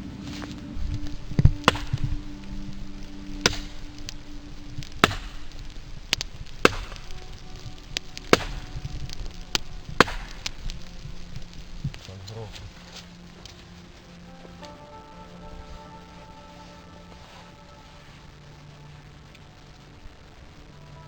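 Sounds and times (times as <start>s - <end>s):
firewood being chopped: 1.4s - 2.2s, 3.4s - 4.2s, 4.9s - 7.2s, 8.2s - 10.7s.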